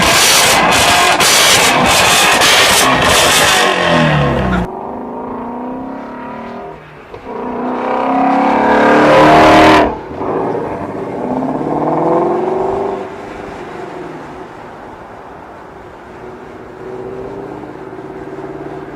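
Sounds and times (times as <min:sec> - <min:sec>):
sports car engine idling and revving: 0:00.0 - 0:13.4.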